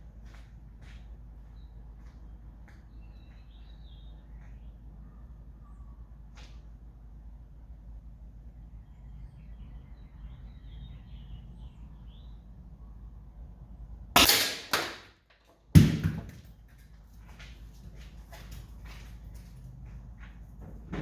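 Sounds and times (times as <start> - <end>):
air gun shots: 14.2 - 15.2, 15.8 - 16.4.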